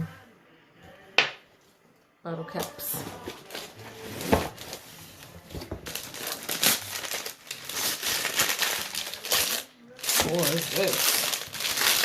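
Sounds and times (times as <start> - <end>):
packaging crinkling: 4.5 - 12.0.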